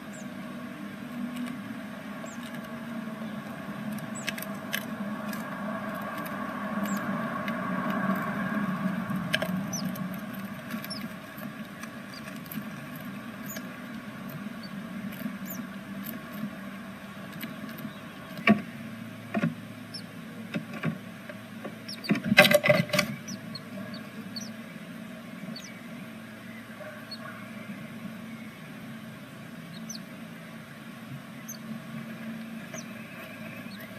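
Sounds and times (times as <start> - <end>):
steady low hum: 0.0 - 33.9
chicks peeping: 2.2 - 18.6, 19.8 - 20.2, 21.6 - 28.7, 29.5 - 30.4, 31.2 - 33.9
bird knocking and scraping: 2.2 - 19.6, 20.5 - 24.0.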